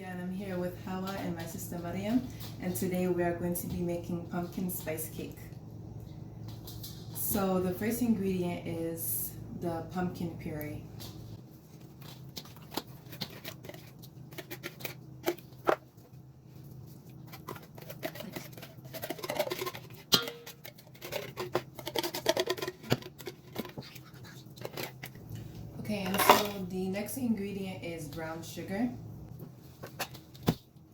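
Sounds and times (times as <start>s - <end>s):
utensil scraping a container: 17.2s - 25.2s.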